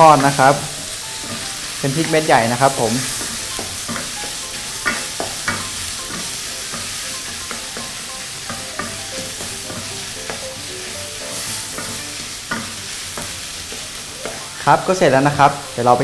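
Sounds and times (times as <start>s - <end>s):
stirring scrapes in a pan: 0.0s - 14.6s
meat sizzling in a pan: 0.0s - 16.0s.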